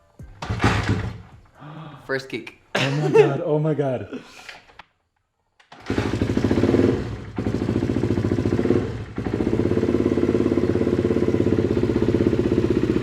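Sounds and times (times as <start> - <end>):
motorcycle engine idling: 5.9 - 13.0.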